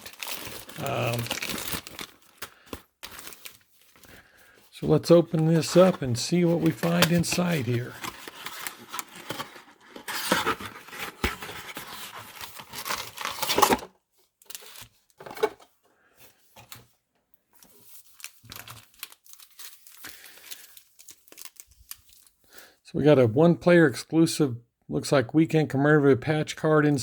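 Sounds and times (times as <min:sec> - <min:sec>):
wrapping crinkling and tearing: 0:00.0 - 0:15.2, 0:17.5 - 0:22.6.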